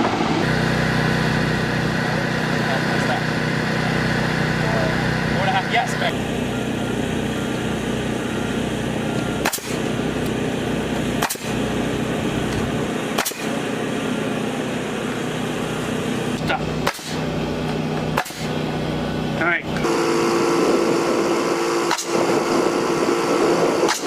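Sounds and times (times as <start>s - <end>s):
engine running: 0.0s - 24.0s
sharp cracks: 9.4s - 9.8s, 11.2s - 11.6s, 13.1s - 13.6s, 16.8s - 17.2s, 18.2s - 18.5s, 21.9s - 22.2s.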